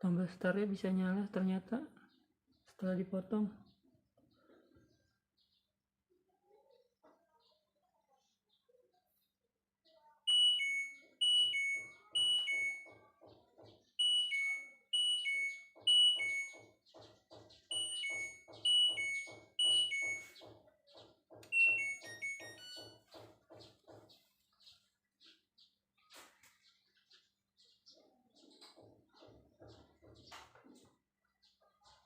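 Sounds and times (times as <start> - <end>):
washing machine panel beeping: 10.3 - 13.1, 14.0 - 16.8, 17.7 - 20.5, 21.4 - 23.2.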